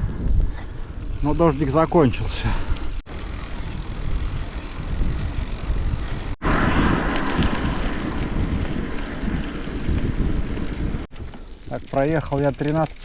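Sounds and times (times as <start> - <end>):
wind on microphone: 0.0 - 1.3, 2.5 - 11.1
bicycle tyre noise: 0.0 - 13.0.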